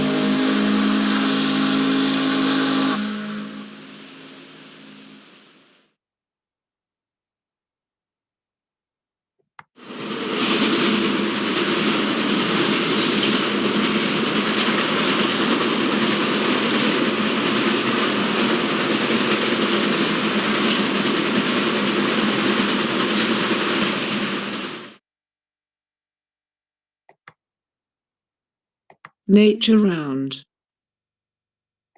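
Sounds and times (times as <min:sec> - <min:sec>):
train running on rails: 0:00.0 - 0:05.8, 0:09.8 - 0:25.0.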